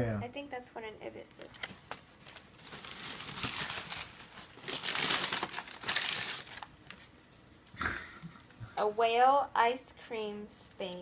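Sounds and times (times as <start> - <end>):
packing material crinkling: 1.6 - 7.2.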